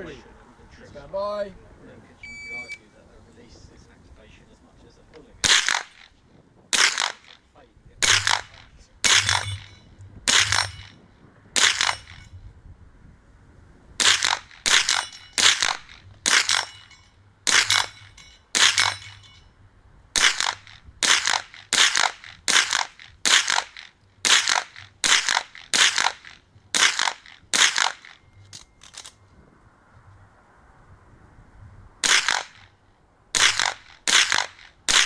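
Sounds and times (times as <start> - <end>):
rifle shots: 5.4 - 7.4, 8.0 - 11.0, 11.6 - 12.3, 14.0 - 19.2, 20.2 - 29.1, 32.0 - 32.7, 33.4 - 35.0.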